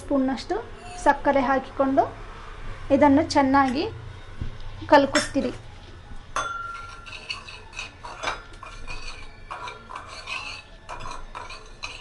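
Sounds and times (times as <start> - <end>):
spoon scraping a pan: 0.7 - 1.2, 6.4 - 12.0.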